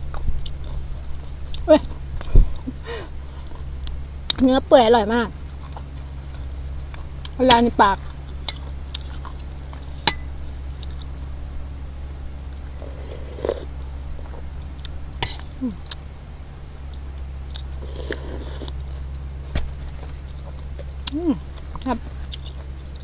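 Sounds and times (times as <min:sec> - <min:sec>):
steady low hum: 0:00.0 - 0:23.0
chewing food: 0:08.0 - 0:10.0, 0:10.7 - 0:11.9, 0:12.5 - 0:16.0, 0:16.8 - 0:18.8, 0:20.0 - 0:23.0
wet mouth noises: 0:12.8 - 0:13.7, 0:17.6 - 0:18.8.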